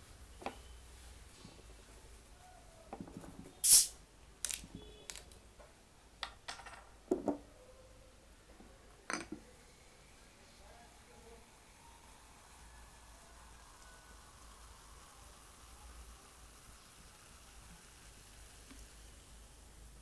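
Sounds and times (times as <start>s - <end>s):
tableware clicking and clattering: 6.2s - 7.4s, 9.1s - 9.4s.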